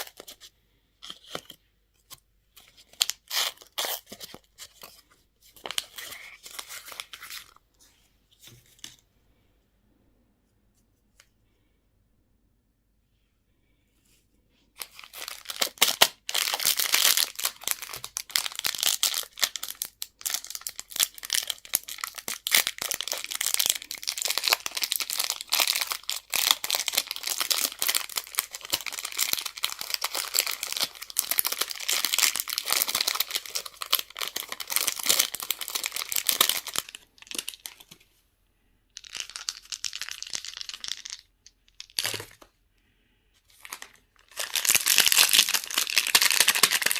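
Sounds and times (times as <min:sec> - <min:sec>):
candy wrapper crinkling: 0:00.0 - 0:01.6, 0:02.6 - 0:05.0, 0:05.6 - 0:07.6, 0:14.8 - 0:38.0, 0:39.0 - 0:42.5, 0:43.5 - 0:46.9.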